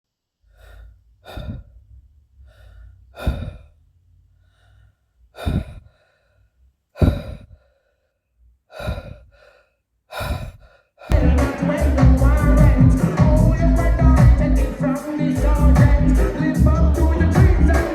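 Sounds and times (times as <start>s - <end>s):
person sighing and gasping: 0.6s - 1.7s, 3.2s - 3.6s, 5.4s - 6.0s, 7.0s - 7.7s, 8.7s - 10.8s
person singing: 11.1s - 17.9s
upbeat music with bass line: 11.1s - 17.9s.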